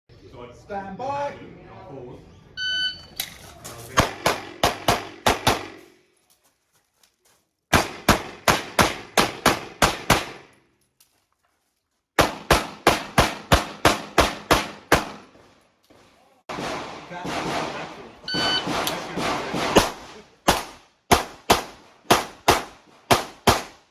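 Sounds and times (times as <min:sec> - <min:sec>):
pistol shots in rapid bursts: 0:04.0 - 0:06.0, 0:07.7 - 0:10.6, 0:12.2 - 0:15.4, 0:16.5 - 0:23.9.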